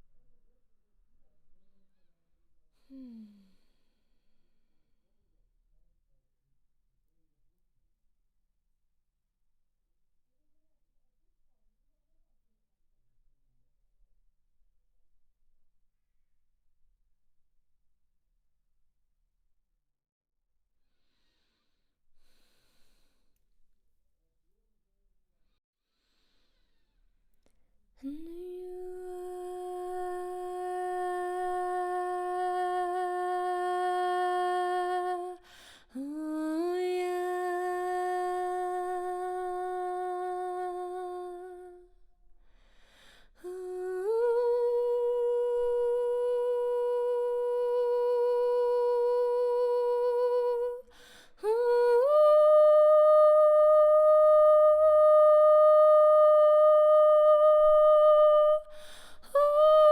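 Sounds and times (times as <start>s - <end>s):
woman breathing: 2.8s - 4.2s, 20.9s - 23.4s, 25.9s - 27.6s, 35.4s - 36.0s, 42.4s - 43.4s, 50.8s - 51.4s, 58.7s - 59.4s.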